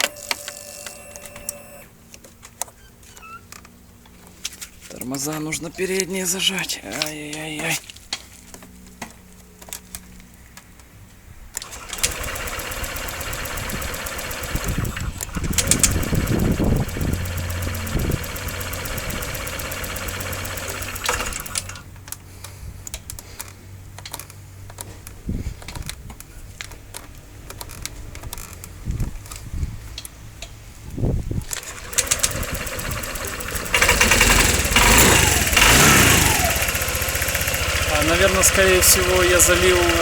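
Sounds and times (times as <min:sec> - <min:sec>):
electric starter cranking engine: 0:00.0 - 0:01.9, 0:11.6 - 0:22.0, 0:31.4 - 0:40.0
scooter engine idling: 0:11.6 - 0:21.9, 0:31.5 - 0:40.0.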